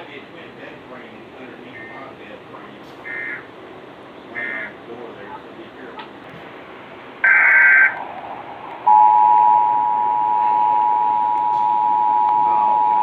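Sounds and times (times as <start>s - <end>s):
two steady alert tones: 8.9s - 13.0s.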